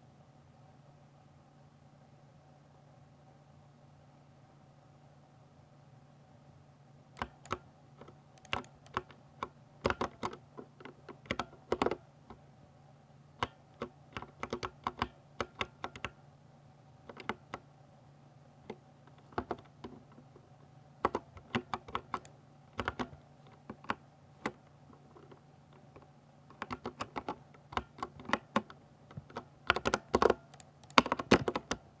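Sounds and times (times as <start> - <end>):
mechanical keyboard typing: 7.2 - 12.0, 13.4 - 16.2, 17.1 - 17.6, 18.7 - 20.4, 21.0 - 31.9.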